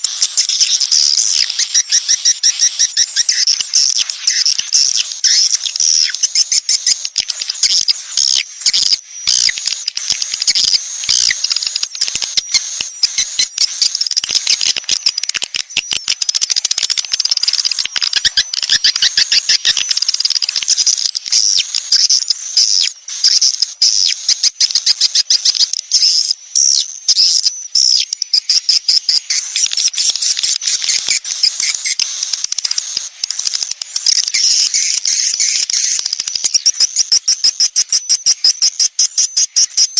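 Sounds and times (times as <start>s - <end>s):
swiftlets twittering: 0.3s - 23.6s.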